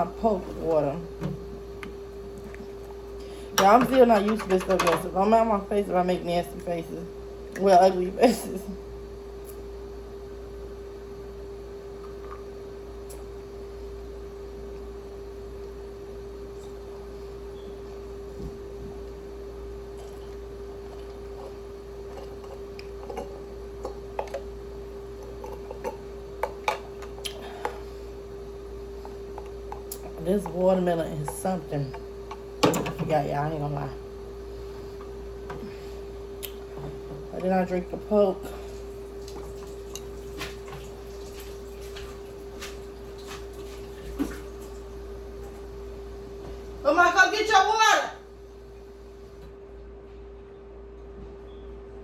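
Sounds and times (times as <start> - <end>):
electrical hum: 0.0 - 52.0
person drinking: 19.9 - 24.5, 25.1 - 28.4
person sipping and swallowing: 20.0 - 24.5, 25.1 - 28.2.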